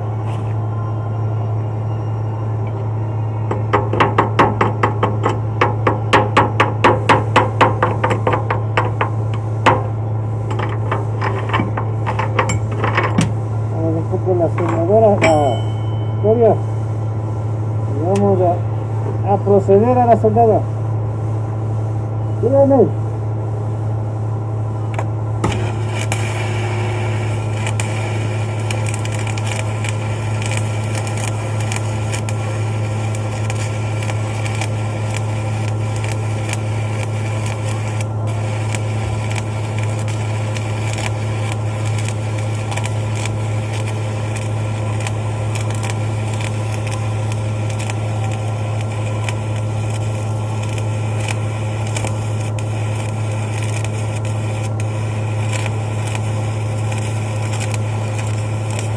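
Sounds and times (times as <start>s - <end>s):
welding machine humming: 2.6s - 58.9s
welding arc crackling: 3.7s - 15.5s, 24.9s - 58.9s.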